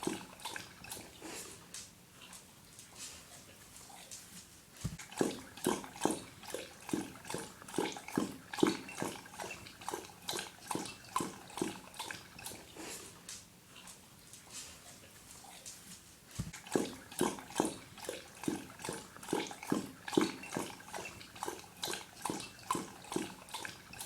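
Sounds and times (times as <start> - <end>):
dog lapping water: 0.0 - 4.2, 4.8 - 24.0.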